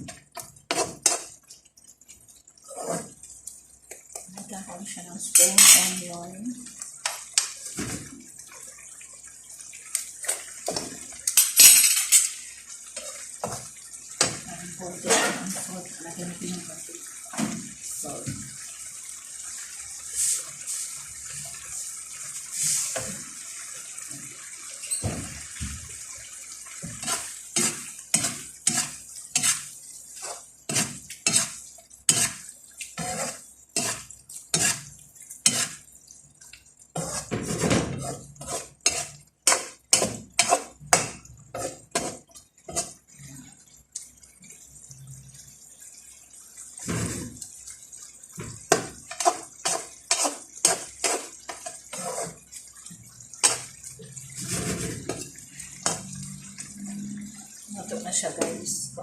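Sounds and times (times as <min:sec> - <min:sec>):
metal spoon clinking on pot: 0:05.4 - 0:06.0.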